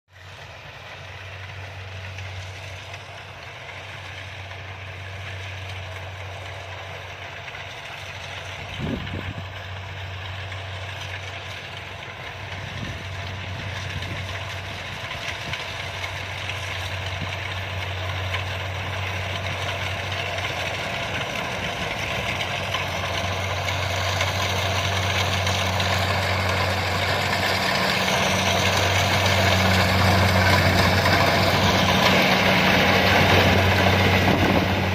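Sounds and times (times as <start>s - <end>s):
diesel engine running: 0.2s - 34.9s.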